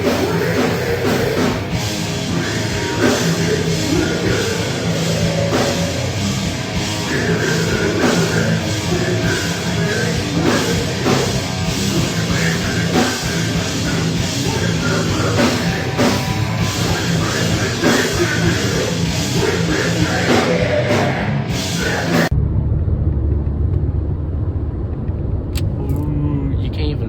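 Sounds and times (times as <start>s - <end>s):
heavy rock music: 0.0s - 22.4s.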